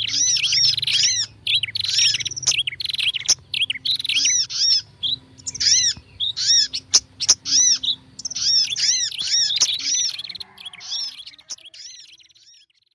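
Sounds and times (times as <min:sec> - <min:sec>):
high bird chirps: 0:00.0 - 0:12.9.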